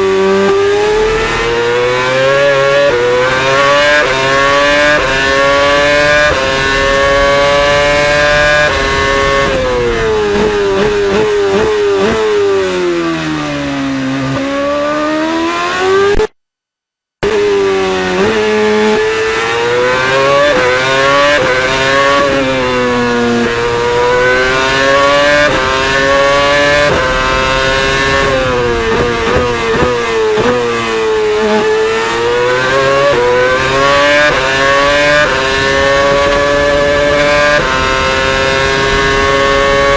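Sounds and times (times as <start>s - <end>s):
racing car engine revving and shifting: 0.0s - 16.4s, 17.2s - 39.9s.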